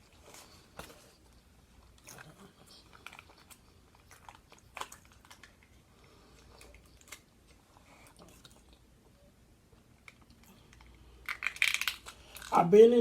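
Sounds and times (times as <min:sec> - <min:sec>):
chewing and mouth clicks: 0:00.0 - 0:09.2.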